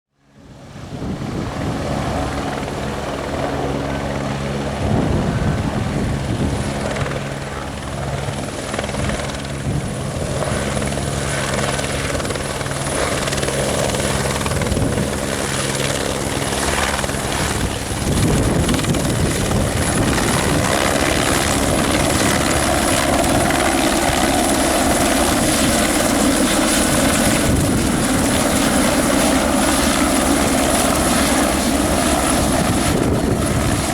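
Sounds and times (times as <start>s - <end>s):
helicopter turbine whine: 0.2s - 33.9s
helicopter rotor beat: 0.3s - 33.9s
wind buffeting microphone: 0.5s - 33.9s.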